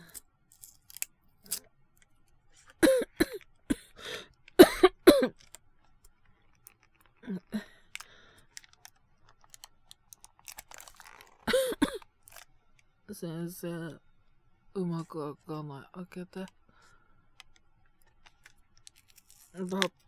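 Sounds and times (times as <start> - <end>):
man coughing: 2.8 - 3.8, 4.6 - 5.3, 11.5 - 12.0.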